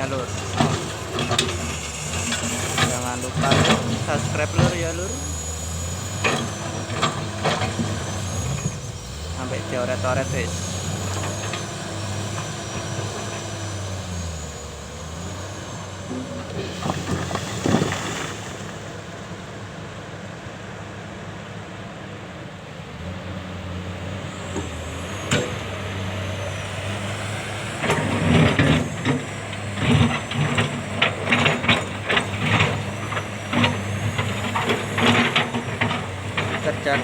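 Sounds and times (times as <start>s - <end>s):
bucket clanking and scraping rock: 0.0s - 5.4s, 16.0s - 19.1s, 27.8s - 37.0s
excavator engines running: 0.0s - 37.0s.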